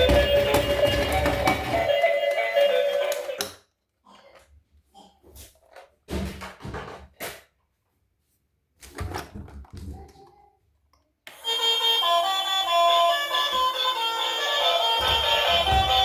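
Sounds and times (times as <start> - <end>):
background music: 12.0 - 16.0
thuds and knocks from boxed toy: 15.0 - 16.0.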